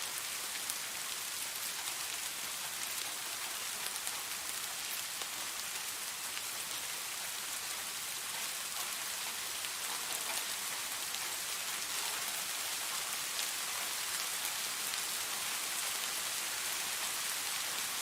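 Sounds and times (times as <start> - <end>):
steady rain hiss: 0.0 - 18.0.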